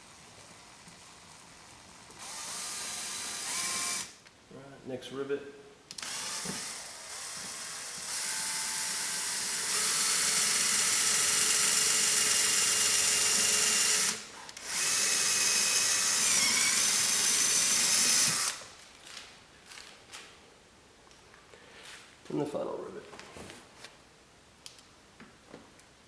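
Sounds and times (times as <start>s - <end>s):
power drill drilling plastic rivet: 2.1s - 4.2s, 5.9s - 18.6s.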